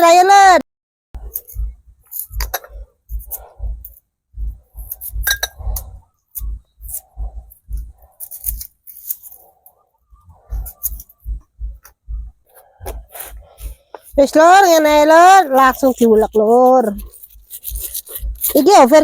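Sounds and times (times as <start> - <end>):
mortar and pestle pounding: 1.2 - 8.7, 10.2 - 19.0.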